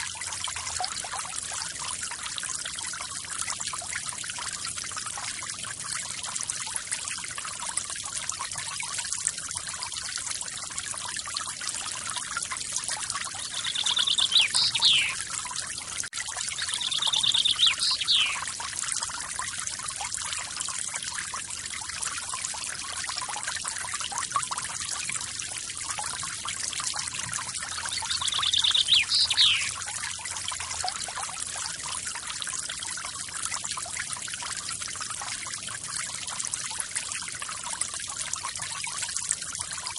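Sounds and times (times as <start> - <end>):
waterfall pouring and trickling: 0.0 - 39.9
songbird trilling: 13.4 - 15.2, 16.6 - 18.5, 27.7 - 29.8.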